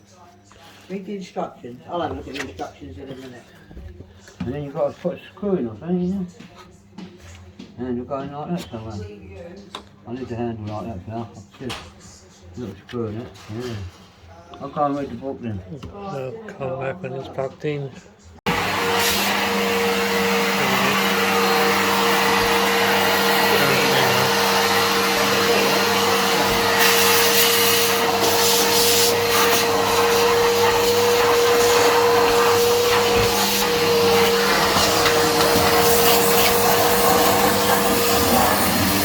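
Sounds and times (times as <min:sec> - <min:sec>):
vacuum cleaner running: 0:18.5 - 0:39.0.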